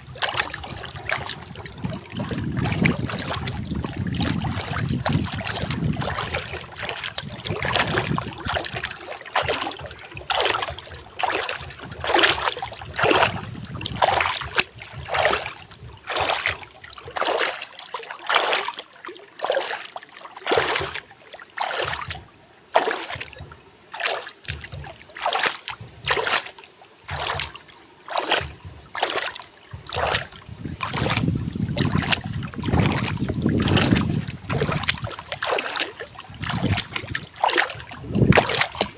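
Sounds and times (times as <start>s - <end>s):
water lapping and splashing: 0.0s - 38.9s
low rumble: 29.8s - 35.2s.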